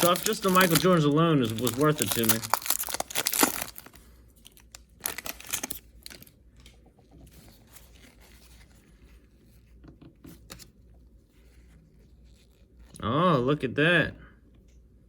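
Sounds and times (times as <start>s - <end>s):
wrapper ripping: 0.0s - 6.3s
wrapper rustling and crackling: 0.0s - 6.4s, 7.3s - 9.4s.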